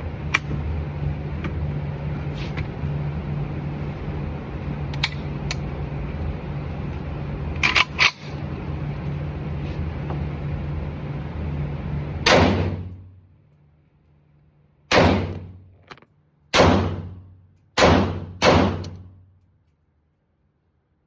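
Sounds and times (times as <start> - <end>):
gunshots with echo: 16.6 - 17.2, 17.8 - 18.9.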